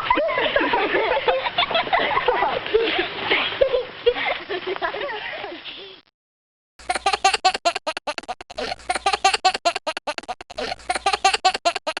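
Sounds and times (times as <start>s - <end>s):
baby laughing: 6.8s - 12.0s.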